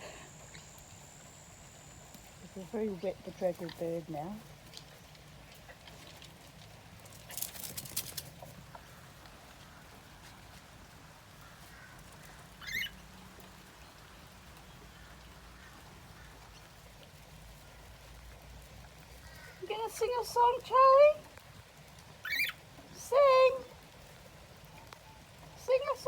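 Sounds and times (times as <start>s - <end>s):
bird rustling and fluttering: 3.6s - 8.9s.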